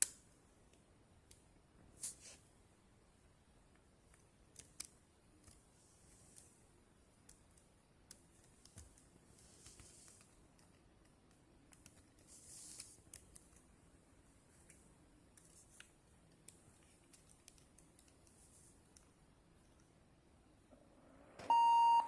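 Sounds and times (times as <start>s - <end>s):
soft rustles: 1.9s - 2.5s, 8.5s - 10.4s, 12.0s - 13.6s.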